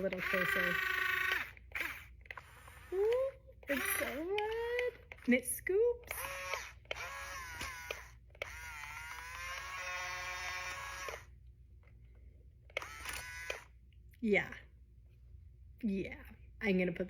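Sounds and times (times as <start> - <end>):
small electric motors whining: 0.0 - 11.3, 12.7 - 13.7.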